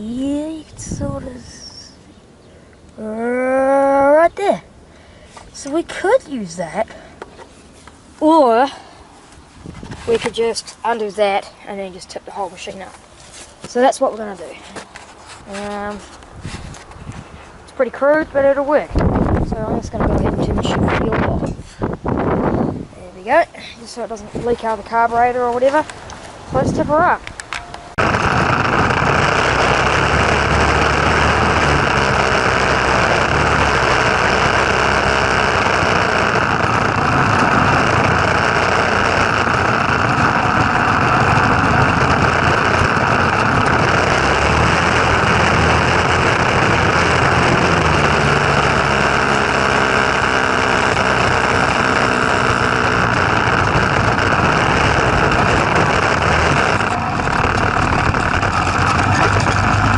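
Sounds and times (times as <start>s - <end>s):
go-kart engine running: 9.9s - 12.0s, 26.6s - 59.9s.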